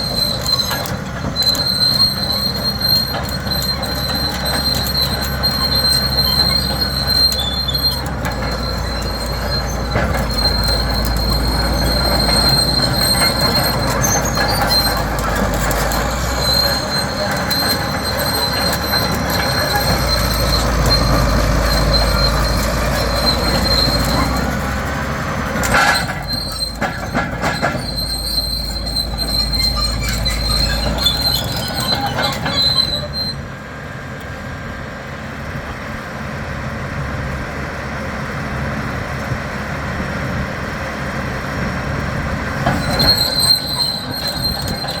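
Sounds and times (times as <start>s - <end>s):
steel tracks squealing: 0.0s - 35.9s, 39.2s - 45.0s
diesel engine rumble: 0.0s - 45.0s.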